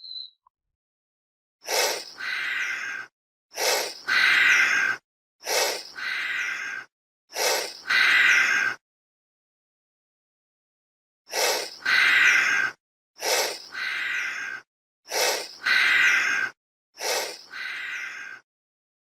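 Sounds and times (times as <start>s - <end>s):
chameleon hissing: 1.6s - 8.8s, 11.3s - 18.4s.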